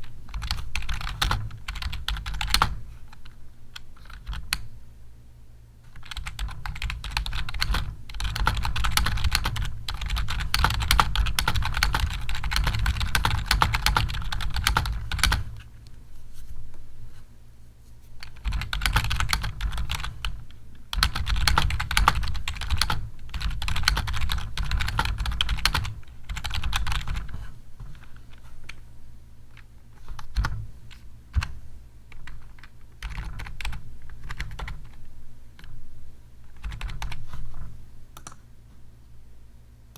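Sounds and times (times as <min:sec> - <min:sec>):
computer keyboard typing: 0:00.3 - 0:03.4, 0:04.0 - 0:04.7, 0:05.9 - 0:15.6, 0:18.2 - 0:28.1, 0:31.3 - 0:35.0, 0:36.5 - 0:38.4.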